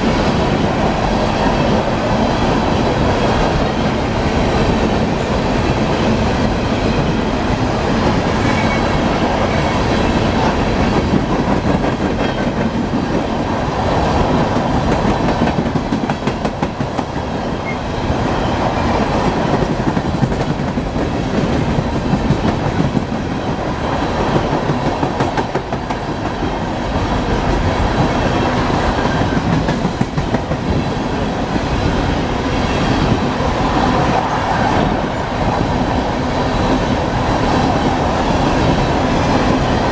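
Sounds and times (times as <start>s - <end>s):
rumble of wheels on rail: 0.0s - 39.9s
train wheels clicking over rail joints: 14.2s - 17.8s, 19.2s - 31.6s.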